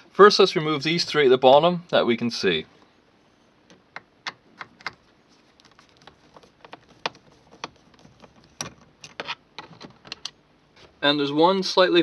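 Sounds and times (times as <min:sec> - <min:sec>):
screwdriver clicking on plastic: 0:05.6 - 0:10.4.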